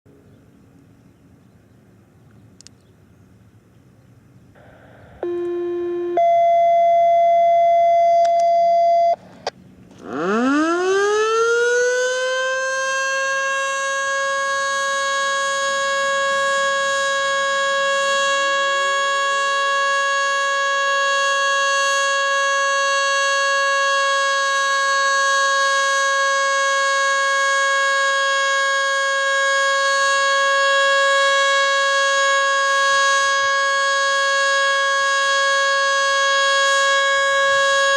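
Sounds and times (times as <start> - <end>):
electronic tones: 4.6 - 9.2
faint second siren: 4.6 - 9.2, 10.0 - 37.9
siren winding up and wailing: 4.6 - 9.2, 10.0 - 37.9.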